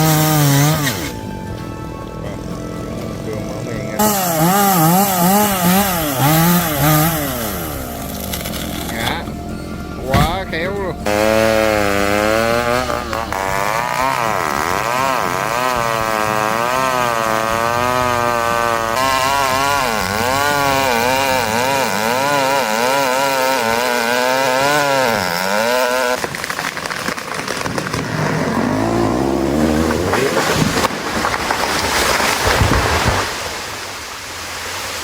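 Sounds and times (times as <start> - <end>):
chainsaw cutting: 0.0 - 35.0
rough rushing noise: 26.2 - 35.0.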